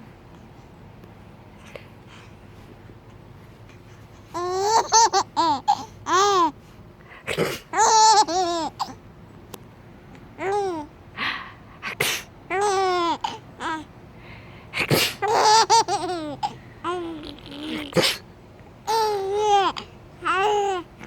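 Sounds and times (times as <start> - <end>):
adult sneezing: 7.2 - 7.7, 11.8 - 12.3, 14.7 - 15.2, 17.7 - 18.3
baby squealing and laughing: 15.2 - 18.0.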